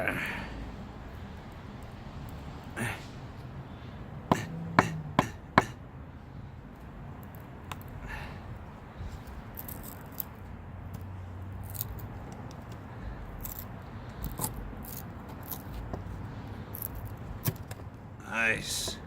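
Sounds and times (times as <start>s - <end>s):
knife blade carving wood: 4.3s - 5.7s, 9.2s - 10.3s, 11.6s - 12.7s, 13.3s - 17.8s.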